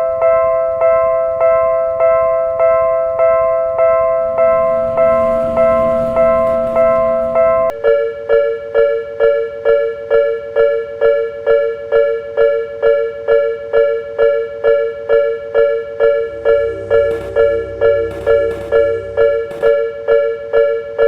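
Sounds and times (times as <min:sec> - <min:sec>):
level crossing warning bell: 0:00.4 - 0:07.7, 0:14.2 - 0:19.8.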